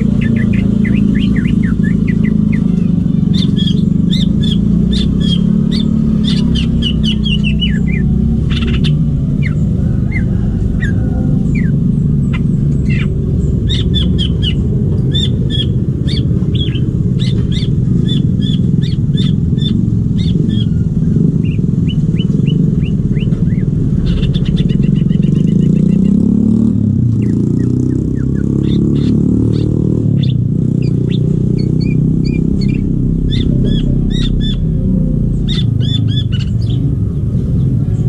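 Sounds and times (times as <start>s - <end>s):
bird chirping and whistling: 0.0s - 36.9s
loud steady low rumble: 0.0s - 38.0s.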